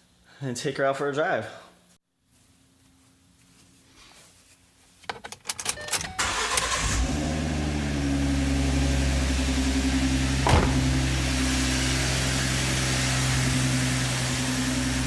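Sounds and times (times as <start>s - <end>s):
car engine idling: 7.2s - 15.0s.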